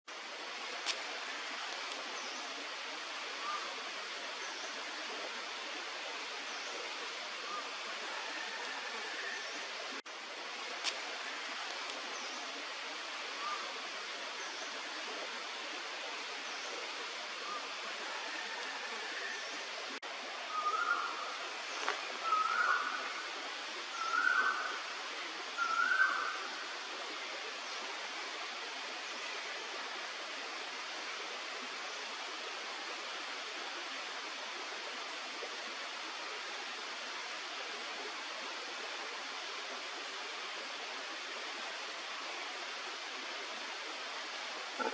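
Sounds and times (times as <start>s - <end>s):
steady hiss: 0.1s - 44.9s
cuckoo whistled calls: 20.5s - 21.4s, 22.2s - 23.0s, 23.9s - 24.8s, 25.6s - 26.4s.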